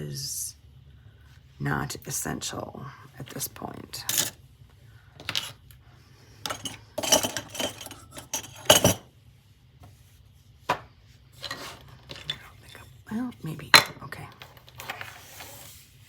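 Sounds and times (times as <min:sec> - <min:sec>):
tools clinking on a work table: 0:06.4 - 0:09.0.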